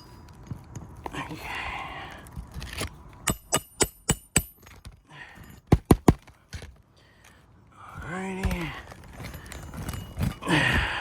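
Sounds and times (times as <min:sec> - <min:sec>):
metal tools clinking: 0:00.0 - 0:01.3, 0:08.4 - 0:11.0.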